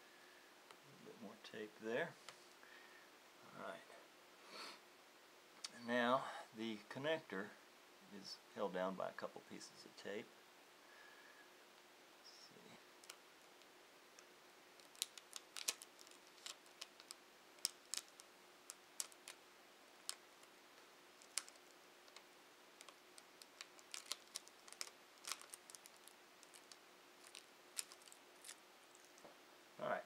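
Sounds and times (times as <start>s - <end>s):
fingers peeling tape: 14.8s - 19.4s, 21.2s - 29.1s.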